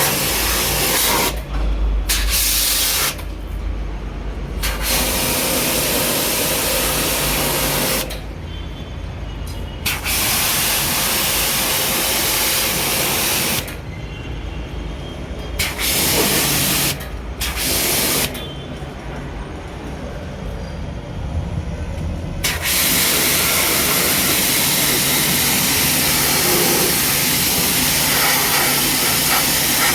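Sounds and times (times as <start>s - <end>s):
pressure washer jet hissing: 0.0s - 1.4s, 2.1s - 3.2s, 4.6s - 8.2s, 9.8s - 13.7s, 15.6s - 18.3s, 22.4s - 29.9s.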